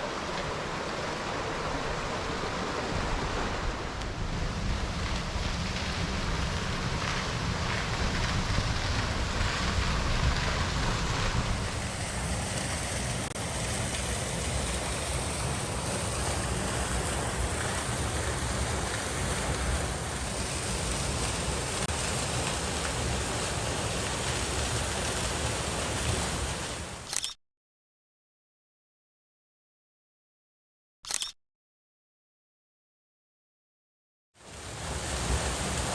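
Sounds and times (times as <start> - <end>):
road and wind noise: 0.0 - 24.8.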